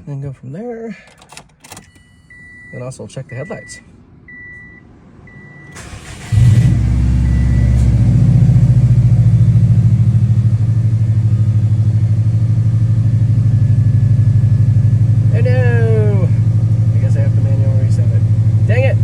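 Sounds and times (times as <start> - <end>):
car engine starting and idling: 0.9 - 19.0
warning chime beeps: 1.9 - 5.8.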